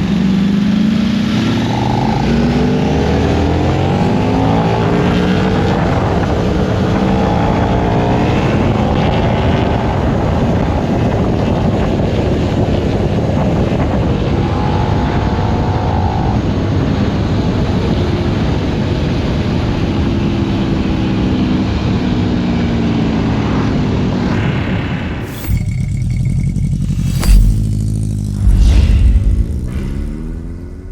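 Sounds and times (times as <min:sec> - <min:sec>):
wind and road noise: 0:00.0 - 0:30.9
motorcycle engine revving: 0:25.2 - 0:30.9.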